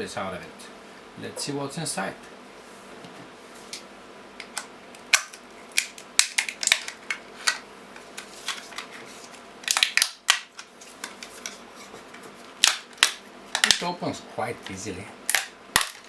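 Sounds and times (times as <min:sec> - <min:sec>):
plastic casing clicks and snaps: 0:04.4 - 0:07.6, 0:09.6 - 0:11.6, 0:12.6 - 0:13.8, 0:15.3 - 0:16.0.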